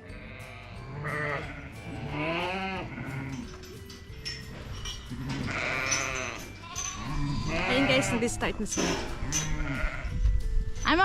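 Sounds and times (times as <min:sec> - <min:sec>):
lambs bleating: 0:00.0 - 0:03.5, 0:05.1 - 0:10.2.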